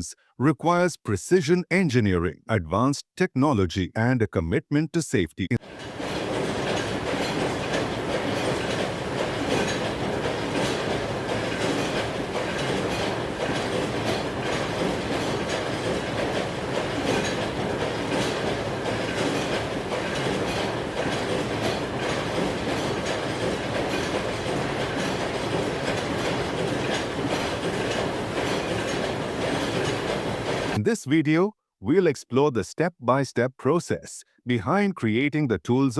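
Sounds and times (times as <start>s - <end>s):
mechanical rattling and rumbling: 5.6s - 30.8s.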